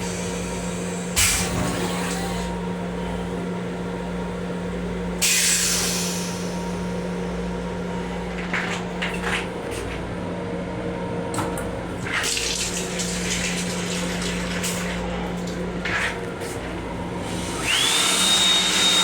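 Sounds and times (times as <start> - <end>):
railcar low hum: 0.0 - 12.2, 13.0 - 17.8
water running in hissing spurts: 12.0 - 16.2.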